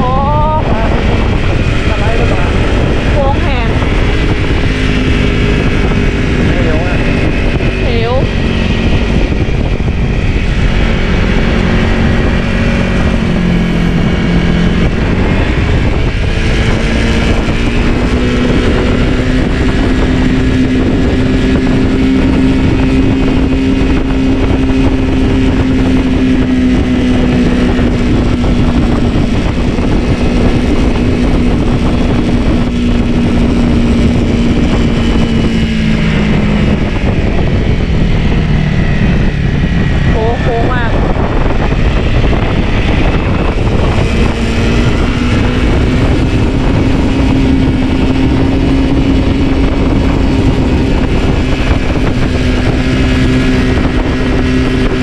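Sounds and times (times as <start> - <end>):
dirt bike engine running: 0.0 - 55.0
track noise: 0.0 - 55.0
wind rush: 0.0 - 55.0.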